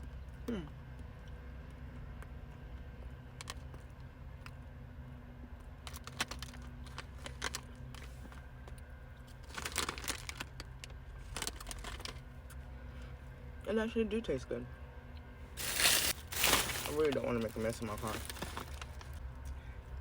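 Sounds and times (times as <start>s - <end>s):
low steady hum: 0.0s - 20.0s
ice cream coating crunching: 15.6s - 19.2s.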